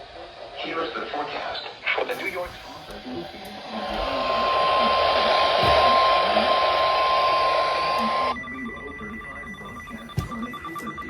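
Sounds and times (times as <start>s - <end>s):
radio static hissing: 0.0s - 8.3s
faint pulsing beeps: 2.2s - 11.0s.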